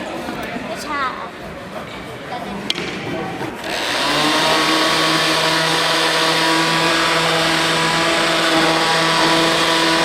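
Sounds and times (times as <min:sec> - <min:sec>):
power tool motor whining: 0:03.6 - 0:10.0.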